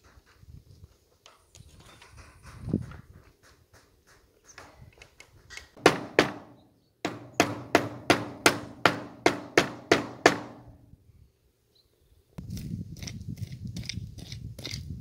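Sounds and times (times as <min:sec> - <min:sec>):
hammer driving nails into wood: 0:05.8 - 0:06.5, 0:07.1 - 0:10.7.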